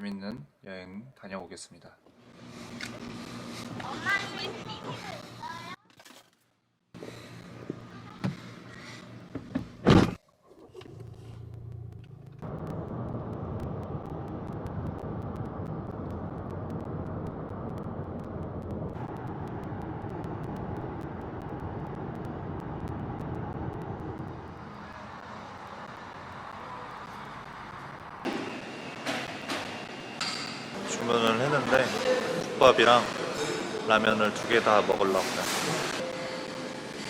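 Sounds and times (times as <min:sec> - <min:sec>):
car engine and road noise: 0:07.4 - 0:37.0
low hum: 0:10.7 - 0:37.0.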